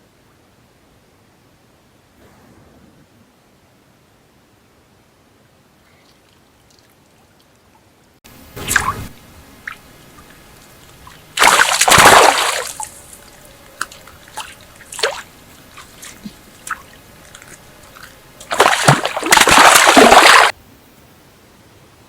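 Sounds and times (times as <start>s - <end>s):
water splashing: 8.5s - 20.6s
water drips and plops: 9.6s - 12.9s, 14.3s - 20.5s.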